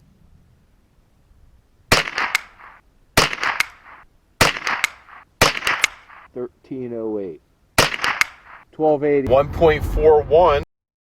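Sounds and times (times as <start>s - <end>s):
rifle shots: 1.9s - 6.3s, 7.8s - 8.6s.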